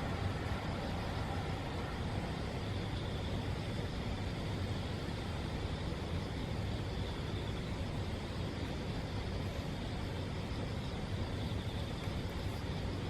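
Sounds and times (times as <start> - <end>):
outdoor background rumble: 0.0 - 13.0.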